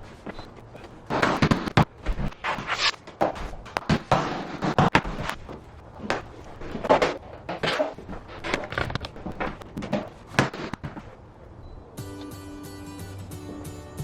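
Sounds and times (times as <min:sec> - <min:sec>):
floor planks knocking and scraping: 0:00.0 - 0:11.2.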